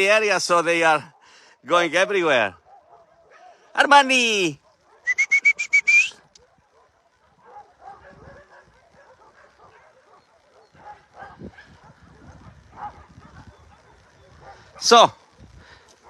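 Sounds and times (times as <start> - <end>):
dog yipping: 4.9 - 14.6.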